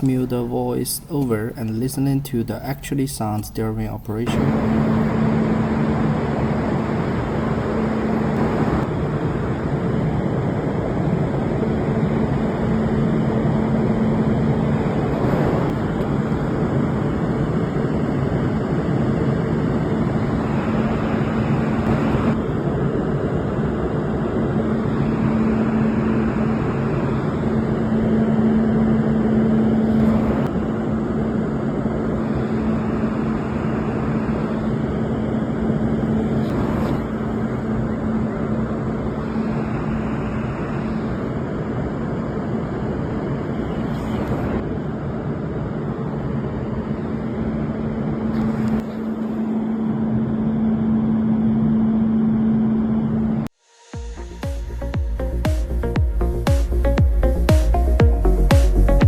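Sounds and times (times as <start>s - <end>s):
cooling fans rushing: 0.0s - 53.5s, 54.2s - 59.0s
low hum: 0.0s - 59.0s.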